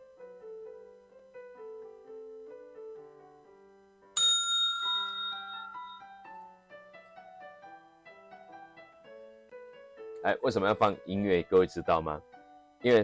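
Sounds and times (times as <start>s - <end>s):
soft piano music: 0.0s - 13.0s
loud bell ding: 4.2s - 6.3s.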